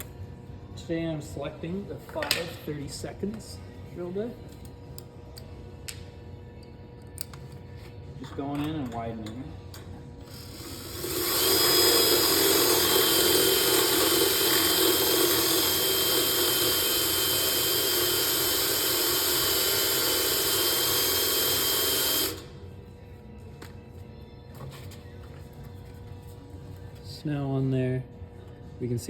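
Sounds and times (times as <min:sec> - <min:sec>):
power drill whining: 0:10.3 - 0:22.6.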